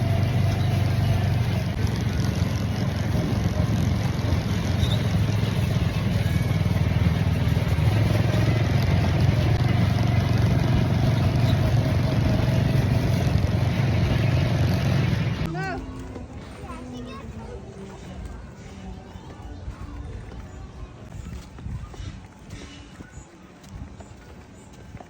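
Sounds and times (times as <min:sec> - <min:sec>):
steam train rumbling: 0:00.0 - 0:15.5.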